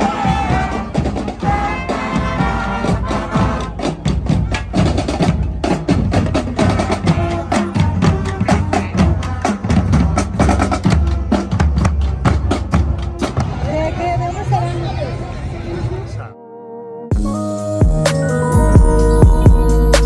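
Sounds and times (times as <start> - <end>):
wood-block percussion beat: 0.0 - 14.5, 17.1 - 20.0
sustained pitched melody: 16.3 - 20.0.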